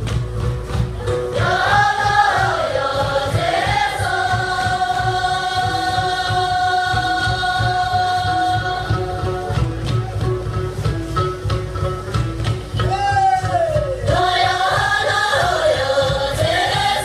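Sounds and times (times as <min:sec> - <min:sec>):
steady low beat: 0:00.0 - 0:17.0
voices singing together: 0:01.0 - 0:10.0, 0:13.8 - 0:17.0.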